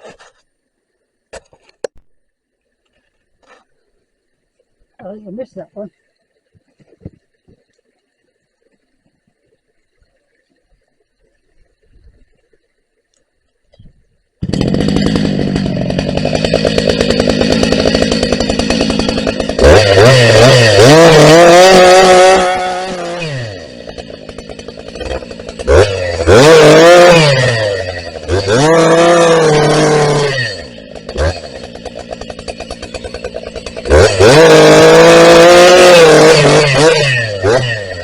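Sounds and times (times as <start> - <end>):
chainsaw revving: 14.4 - 38.0.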